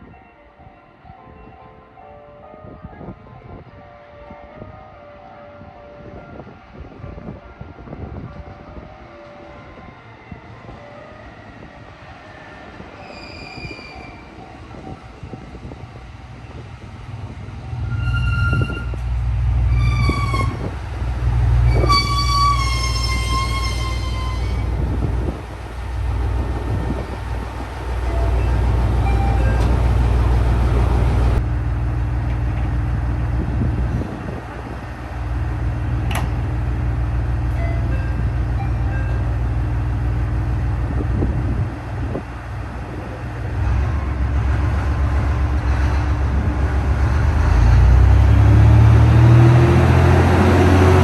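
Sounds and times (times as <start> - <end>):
train rumbling: 6.6 - 51.0
train horn blasts: 19.7 - 20.7, 21.6 - 31.4.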